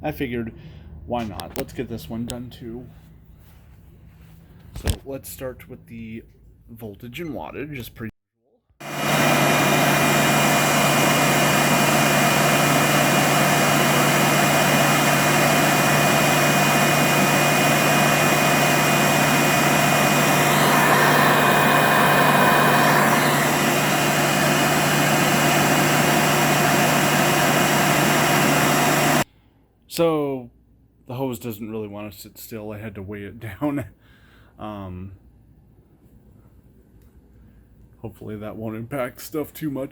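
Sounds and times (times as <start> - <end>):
vacuum cleaner motor running: 8.8 - 29.2.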